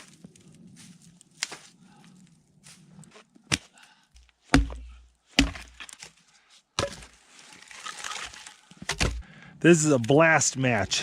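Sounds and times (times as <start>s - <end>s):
axe strikes chopping wood: 4.5s - 6.0s, 8.8s - 9.2s.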